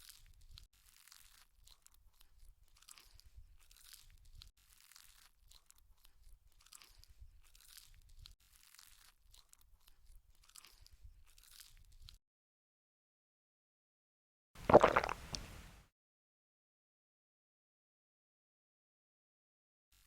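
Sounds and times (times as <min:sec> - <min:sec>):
crunchy chewing of food: 0:00.0 - 0:12.2, 0:14.6 - 0:15.6.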